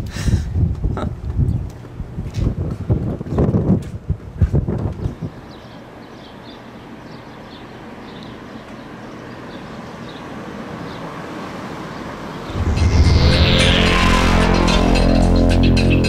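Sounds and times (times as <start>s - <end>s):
music with deep bass: 12.5s - 16.0s
steady rushing noise: 12.5s - 16.0s.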